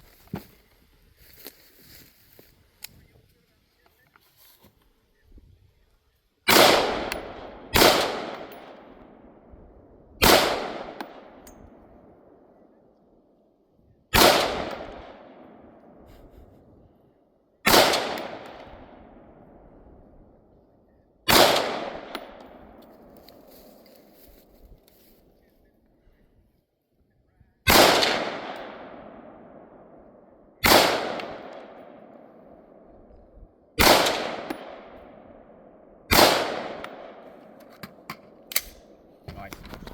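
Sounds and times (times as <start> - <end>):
gunshots with echo: 6.5 - 8.9, 10.2 - 11.4, 14.1 - 15.7, 17.6 - 19.2, 21.3 - 22.7, 27.7 - 29.7, 30.6 - 32.1, 33.8 - 35.2, 36.1 - 37.3.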